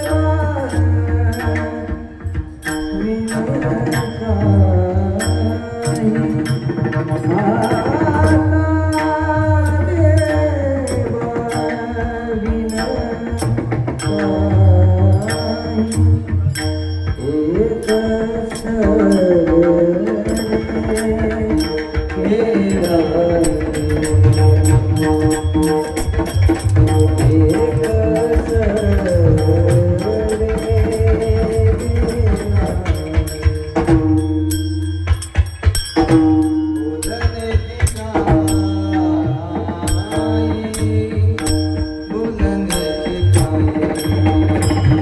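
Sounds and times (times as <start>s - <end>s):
hand drum playing: 0.0s - 45.0s.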